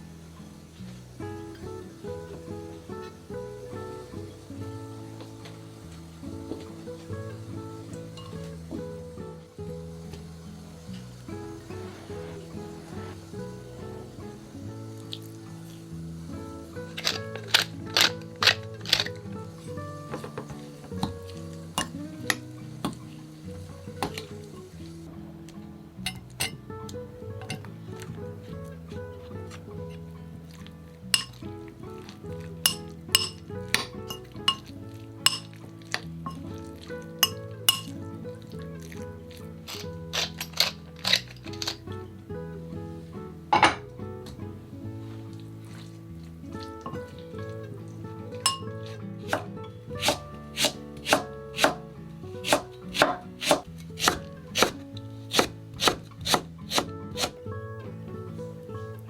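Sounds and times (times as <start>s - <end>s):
soft background music: 0.0s - 59.0s
utensils clinking against dishes: 21.8s - 22.4s, 26.1s - 26.6s, 31.2s - 31.4s, 32.6s - 34.6s, 35.3s - 35.5s, 37.2s - 37.9s, 48.4s - 48.7s
knife chopping on cutting board: 49.3s - 51.8s, 52.4s - 57.4s.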